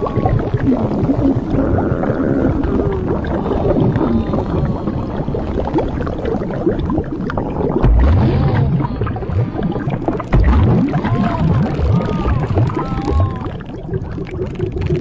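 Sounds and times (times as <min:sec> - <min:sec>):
gurgling and sloshing: 0:00.0 - 0:15.0
deep rising groan: 0:07.8 - 0:13.4.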